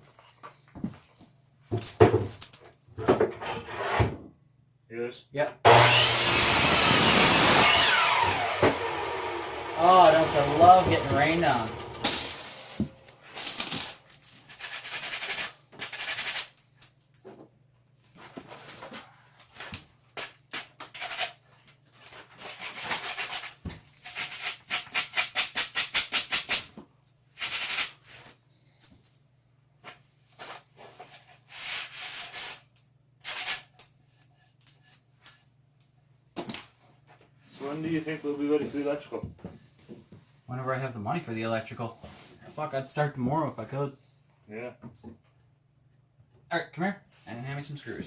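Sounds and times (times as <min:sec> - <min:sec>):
rustling or scraping: 0:18.0 - 0:24.7, 0:27.4 - 0:29.2, 0:29.8 - 0:35.4, 0:36.7 - 0:40.5, 0:41.8 - 0:42.7.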